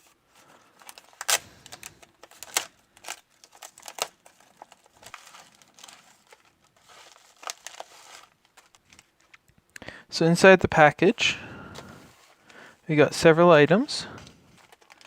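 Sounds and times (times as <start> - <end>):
packaging crinkling: 0.0 - 9.5, 14.4 - 15.0.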